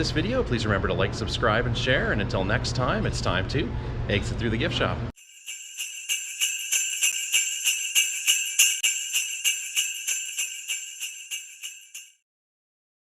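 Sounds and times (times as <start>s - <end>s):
jingle bells shaken: 5.2s - 12.2s.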